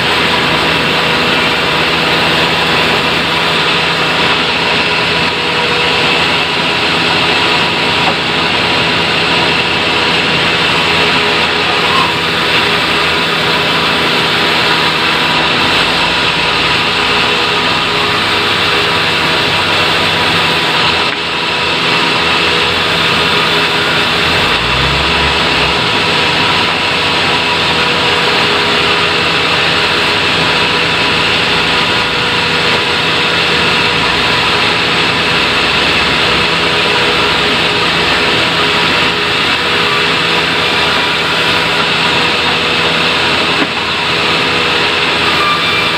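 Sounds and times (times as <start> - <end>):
sawmill machinery running: 0.0 - 45.9.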